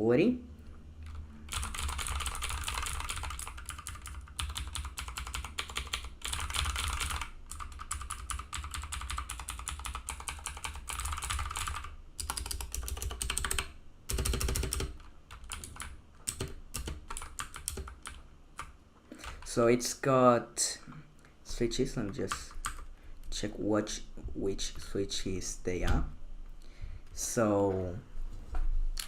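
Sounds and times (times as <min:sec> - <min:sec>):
mechanical keyboard typing: 0:01.0 - 0:19.5, 0:22.0 - 0:22.9.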